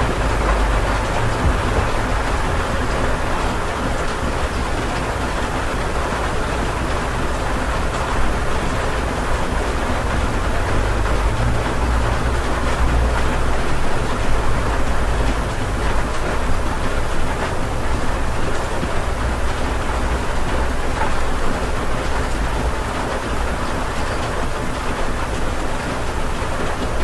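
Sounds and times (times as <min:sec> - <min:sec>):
deep low rumble: 0:00.0 - 0:04.1
heavy rain: 0:00.0 - 0:27.0.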